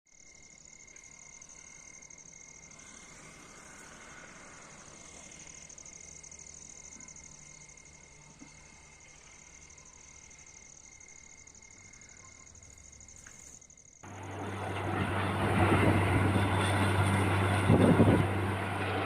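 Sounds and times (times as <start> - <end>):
insect trilling: 0.3 - 14.0.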